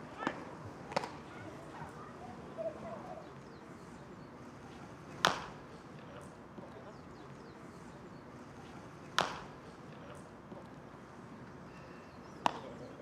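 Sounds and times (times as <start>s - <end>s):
outdoor background noise: 0.0s - 13.0s
baseball bat cracks: 5.2s - 5.6s, 9.2s - 9.6s, 12.4s - 12.7s.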